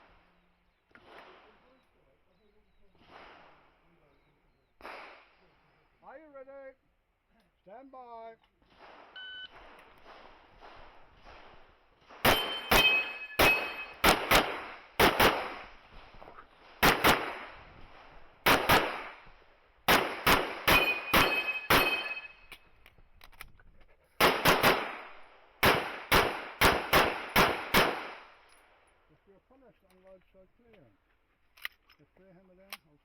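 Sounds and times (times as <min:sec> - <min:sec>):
pistol shots: 0:04.8 - 0:05.3, 0:08.7 - 0:22.4, 0:24.2 - 0:28.4
steel target ringing: 0:12.3 - 0:14.0, 0:20.7 - 0:22.5.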